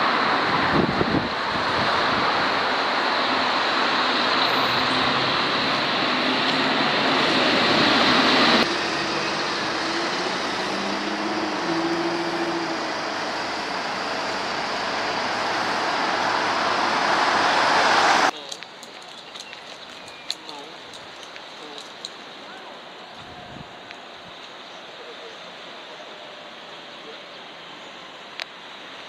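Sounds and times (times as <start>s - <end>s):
train rushing through station: 0.0s - 18.5s.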